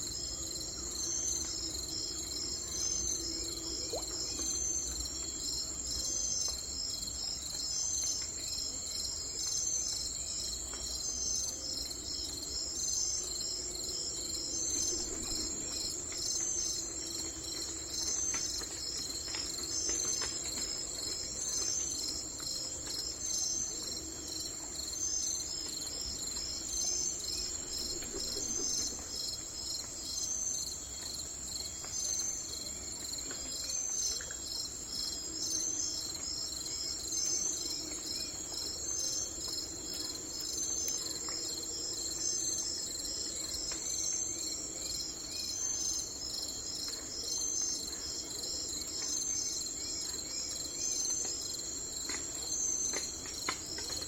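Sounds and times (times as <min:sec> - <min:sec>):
crickets trilling: 0:00.0 - 0:54.0.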